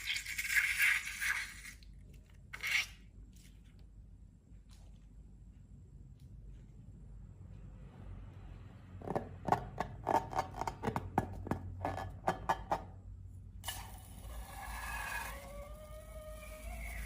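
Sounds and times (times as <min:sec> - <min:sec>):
wavering squeaky tones: 0:14.5 - 0:17.0.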